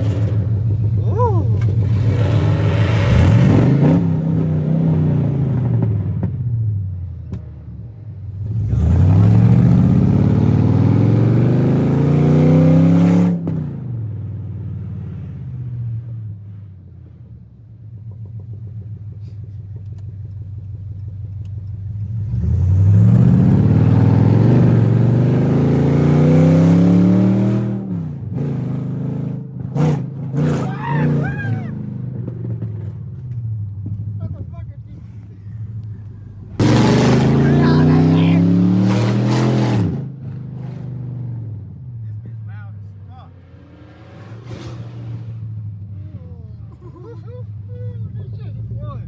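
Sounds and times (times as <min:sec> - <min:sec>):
car engine revving: 0:00.0 - 0:06.4, 0:08.3 - 0:13.9, 0:21.9 - 0:34.0, 0:35.5 - 0:41.8, 0:42.5 - 0:47.2.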